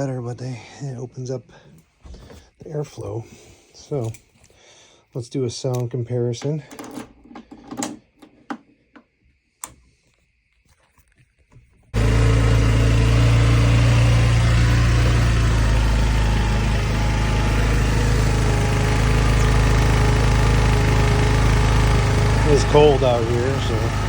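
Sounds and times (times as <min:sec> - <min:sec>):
scooter engine idling: 0:12.0 - 0:24.0.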